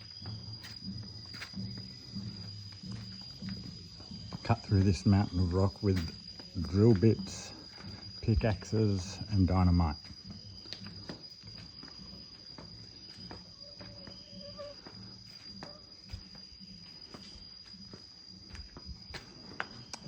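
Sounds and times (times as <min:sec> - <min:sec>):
insects droning: 0:00.0 - 0:20.0.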